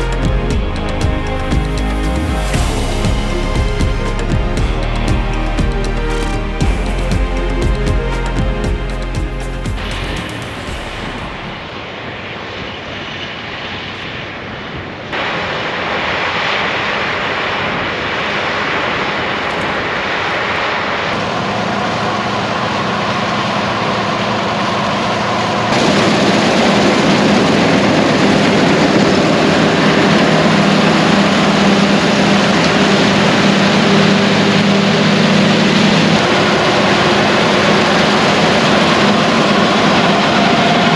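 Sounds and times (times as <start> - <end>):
harvest machinery running: 0.0 - 11.7
low engine hum: 0.0 - 11.8.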